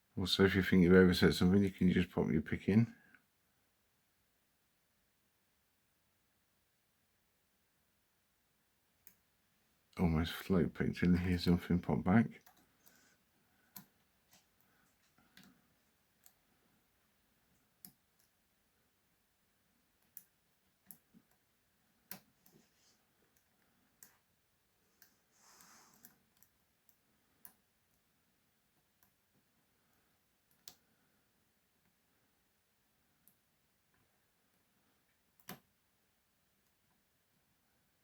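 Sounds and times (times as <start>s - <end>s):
soft rustle: 22.3s - 23.8s, 24.8s - 26.2s.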